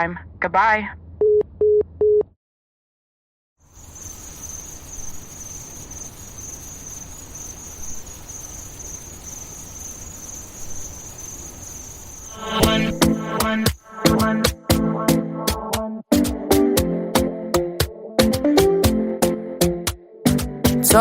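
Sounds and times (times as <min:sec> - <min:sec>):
crickets chirring: 0:03.6 - 0:14.4.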